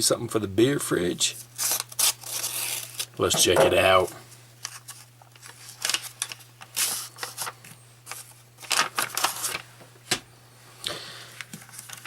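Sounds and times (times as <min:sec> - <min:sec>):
package crinkling and tearing: 0:01.6 - 0:03.2, 0:04.6 - 0:09.7, 0:11.4 - 0:12.0.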